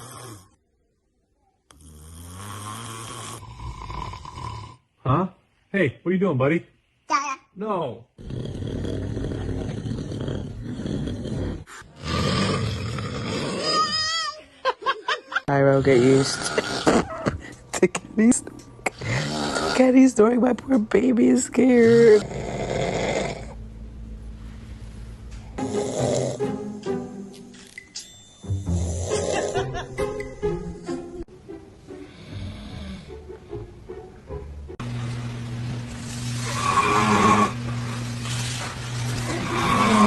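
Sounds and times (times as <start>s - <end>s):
man snoring loudly: 0.0s - 0.6s, 1.7s - 4.9s, 8.2s - 14.0s, 15.7s - 17.1s, 18.9s - 19.9s, 21.8s - 23.6s, 25.6s - 26.6s, 28.5s - 29.7s, 32.1s - 33.1s, 36.0s - 38.0s, 39.2s - 40.0s
background music: 25.4s - 35.0s.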